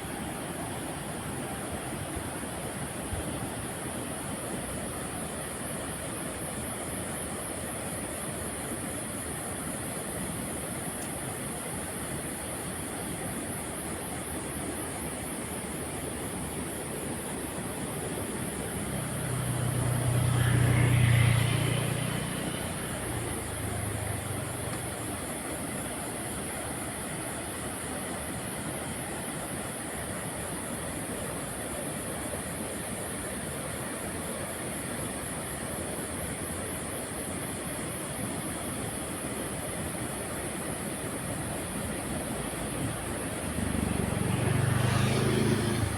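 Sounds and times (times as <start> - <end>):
steady rushing hiss: 0.0 - 45.0
vehicle passing by: 18.8 - 24.9, 43.2 - 45.9.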